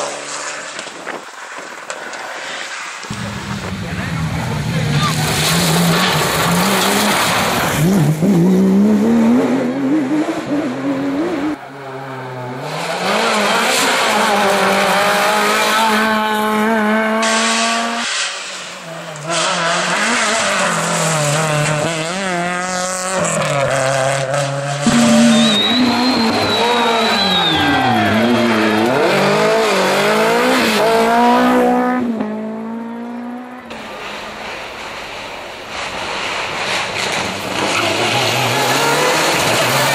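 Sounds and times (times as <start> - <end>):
rally car engines revving: 0.0 - 39.9
tyre squeal: 24.8 - 28.7.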